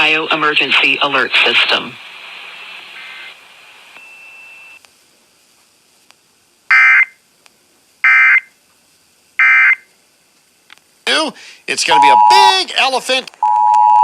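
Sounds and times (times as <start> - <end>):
faint hiss: 0.5 - 13.4
screechy digital data tone bursts: 11.7 - 12.7.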